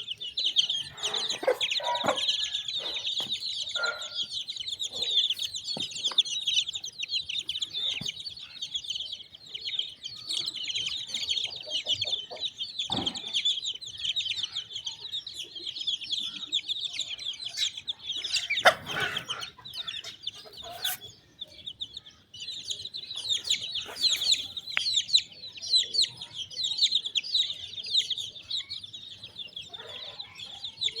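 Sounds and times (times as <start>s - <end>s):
chicks peeping: 0.0s - 31.0s
hen clucking: 0.4s - 8.5s, 10.4s - 13.8s, 17.5s - 21.2s, 23.0s - 25.3s.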